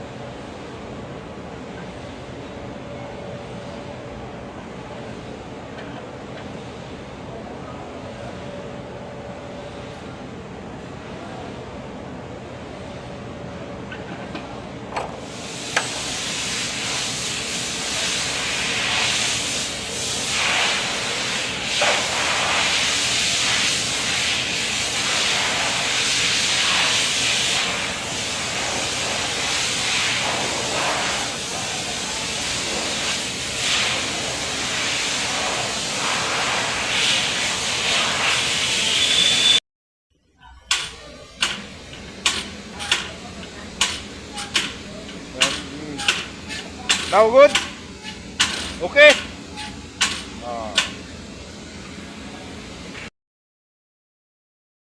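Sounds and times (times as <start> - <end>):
pump sprayer spray hiss: 15.2 - 39.6, 40.7 - 47.8
sprayer clicks: 40.7 - 43.2.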